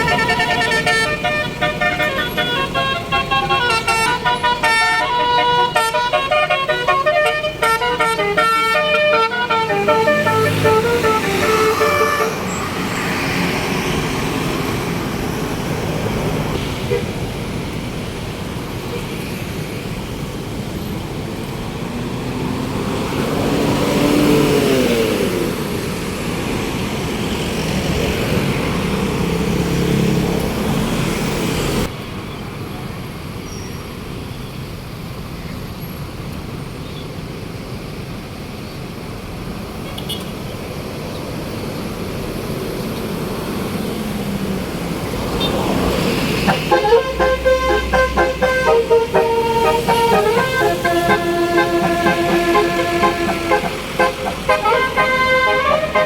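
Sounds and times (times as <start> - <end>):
bus horn playing stepped tones: 0.0 - 12.7, 46.5 - 56.0
buses and cars driving past: 0.0 - 56.0.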